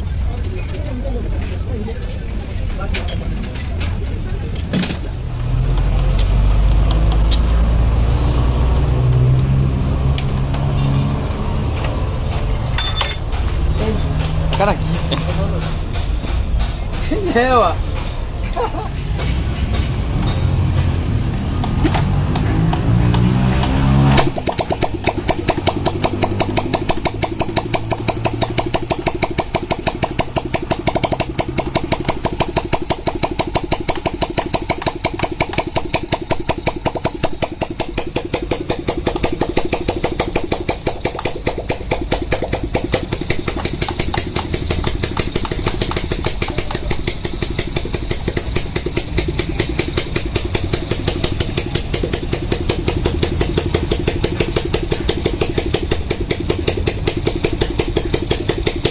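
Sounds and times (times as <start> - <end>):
motorcycle engine idling: 24.3 - 58.9.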